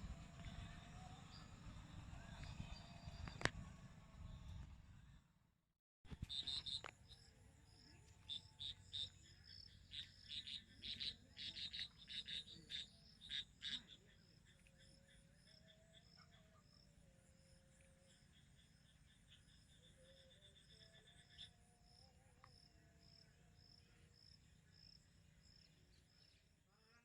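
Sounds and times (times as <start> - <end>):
frogs calling in short bursts: 6.1 - 7.0, 8.3 - 22.0.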